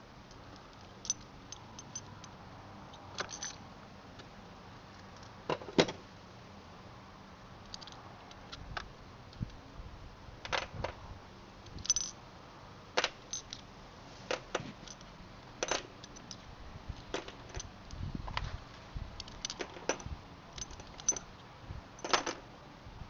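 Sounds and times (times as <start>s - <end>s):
metal parts clinking: 0.4s - 3.6s, 7.6s - 8.0s, 11.6s - 12.2s, 13.0s - 13.7s, 14.3s - 16.4s, 17.0s - 17.7s, 19.2s - 21.4s, 22.0s - 22.4s.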